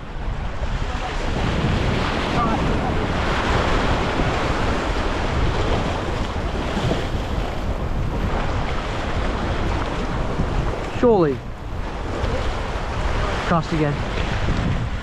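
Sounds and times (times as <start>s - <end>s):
waves washing: 0.0s - 15.0s
wind buffeting microphone: 0.0s - 15.0s.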